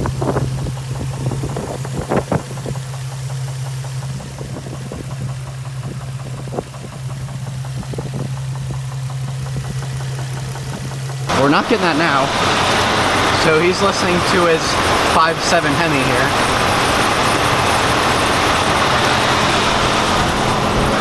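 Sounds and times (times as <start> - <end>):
engine light ticking: 0.0 - 11.3
car engine idling: 0.0 - 21.0.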